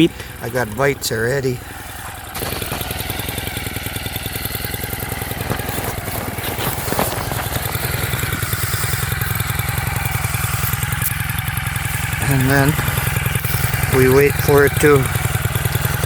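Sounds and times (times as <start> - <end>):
ice auger engine running: 0.0 - 16.0.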